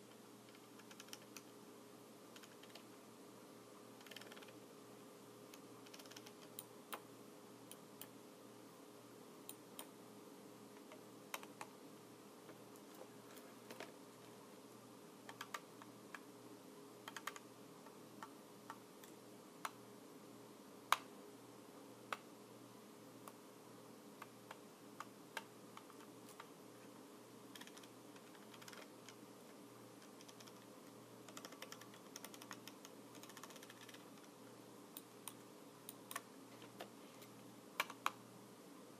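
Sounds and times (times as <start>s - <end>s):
faint steady hum: 0.0s - 38.9s
keyboard keys clicking: 0.5s - 1.5s, 2.4s - 2.8s, 4.0s - 4.6s, 5.8s - 7.0s, 17.1s - 17.4s, 27.5s - 29.2s, 31.3s - 34.0s.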